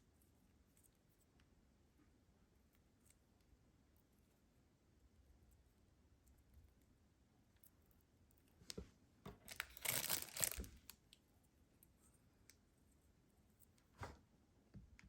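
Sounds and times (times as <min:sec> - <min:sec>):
packaging rustling and tearing: 0:09.3 - 0:10.9.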